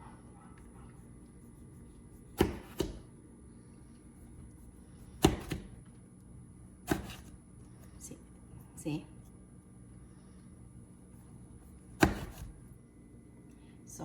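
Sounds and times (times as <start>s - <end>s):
knife cutting eggplant: 0.6s - 3.1s, 4.2s - 5.8s, 6.8s - 7.4s, 11.6s - 12.7s.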